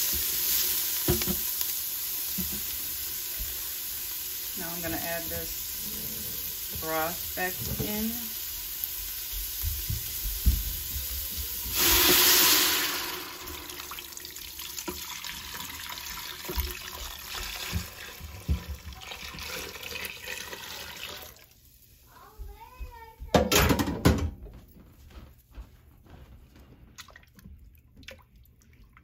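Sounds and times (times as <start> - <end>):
simmering hiss: 0.0 - 14.8
liquid hissing and splashing: 0.0 - 21.6.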